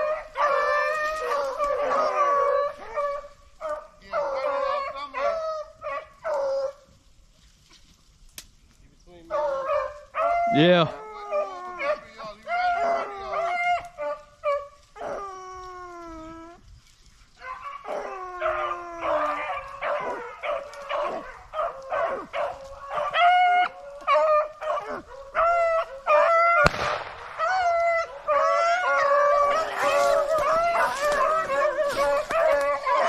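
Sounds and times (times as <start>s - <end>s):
hounds baying and howling: 0.0s - 8.0s, 9.0s - 33.0s
sharp crack: 26.5s - 32.8s.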